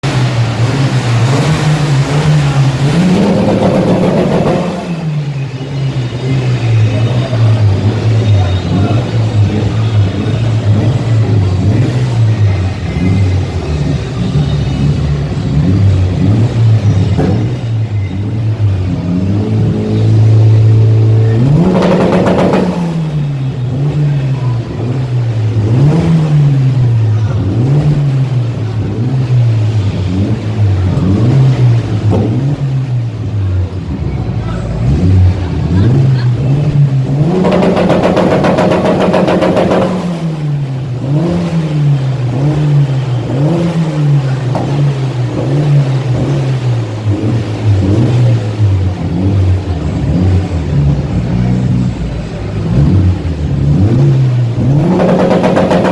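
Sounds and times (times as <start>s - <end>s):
car engine idling and revving: 0.0s - 55.9s
exhaust backfire pops: 2.4s - 5.3s, 15.6s - 18.6s, 21.0s - 28.4s, 30.4s - 33.1s, 35.0s - 47.6s, 52.6s - 55.9s.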